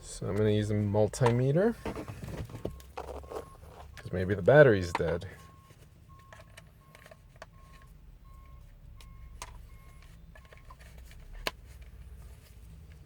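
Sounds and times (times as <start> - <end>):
vehicle warning chime beeping: 2.6 - 10.8.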